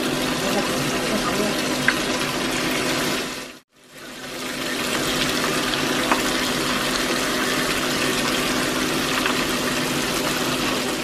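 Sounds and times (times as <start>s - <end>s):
tofu deep-frying in hot oil: 0.0s - 11.0s
oil popping: 4.6s - 11.0s.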